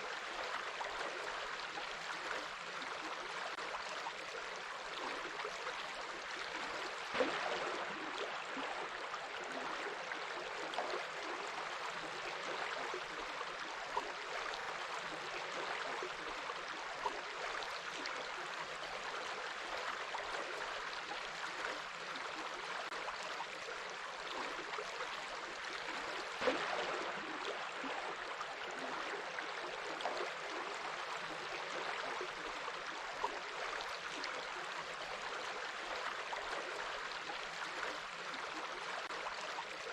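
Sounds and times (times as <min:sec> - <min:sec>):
water splashes: 0:06.4 - 0:12.7, 0:25.8 - 0:35.2.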